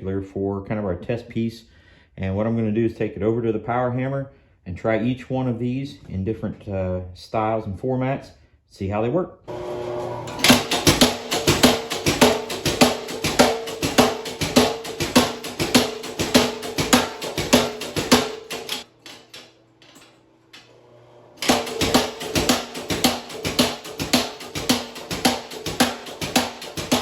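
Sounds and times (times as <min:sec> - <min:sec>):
motor hum: 0:09.5 - 0:11.4, 0:20.0 - 0:22.0
power hammer striking steel: 0:10.3 - 0:19.4, 0:21.4 - 0:27.0.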